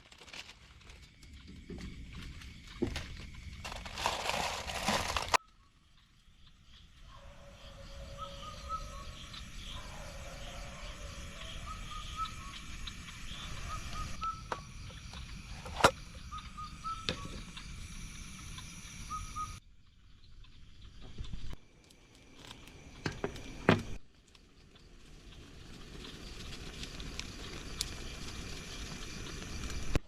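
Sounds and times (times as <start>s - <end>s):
high-pitched insect drone: 7.4s - 19.6s.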